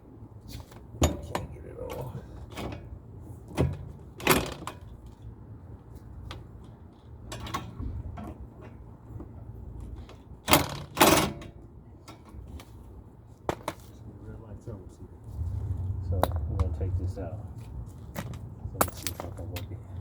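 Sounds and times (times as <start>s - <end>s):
steady low hum: 14.9s - 20.0s.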